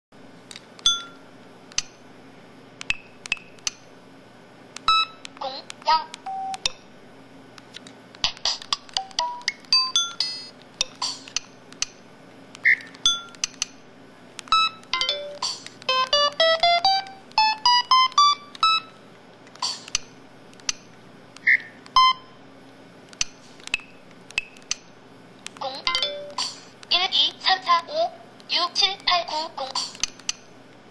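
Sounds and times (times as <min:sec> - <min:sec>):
electronic phone beeps and chimes: 0:00.8 - 0:01.2, 0:04.9 - 0:05.2, 0:06.2 - 0:06.6, 0:14.5 - 0:19.0, 0:21.5 - 0:22.4.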